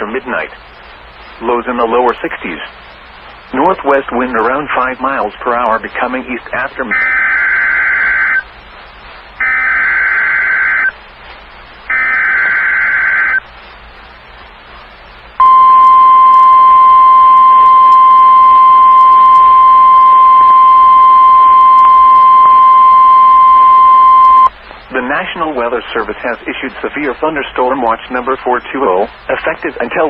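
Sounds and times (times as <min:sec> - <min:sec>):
digital data tone bursts: 0:06.8 - 0:08.5, 0:09.4 - 0:11.0, 0:11.9 - 0:13.5, 0:15.4 - 0:24.5
steady high alarm tone: 0:06.9 - 0:08.4, 0:09.4 - 0:10.9, 0:11.9 - 0:13.4, 0:15.4 - 0:24.5.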